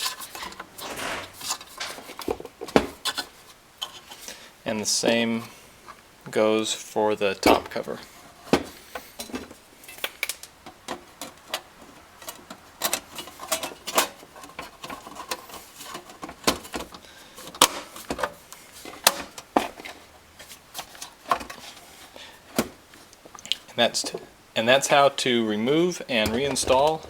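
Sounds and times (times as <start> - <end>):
clicks and knocks of plastic cover: 12.2 - 21.8.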